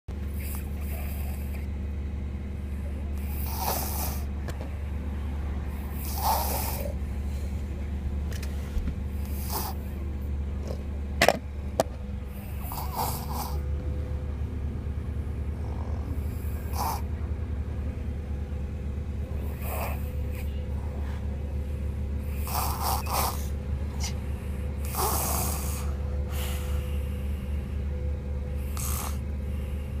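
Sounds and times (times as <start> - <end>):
car low rumble: 0.1 - 30.0
child snoring: 0.4 - 1.7, 3.2 - 4.3, 5.7 - 7.0, 9.2 - 9.9, 12.4 - 13.7, 15.5 - 17.2, 19.4 - 21.1, 22.2 - 24.2, 24.8 - 27.0, 28.6 - 29.3.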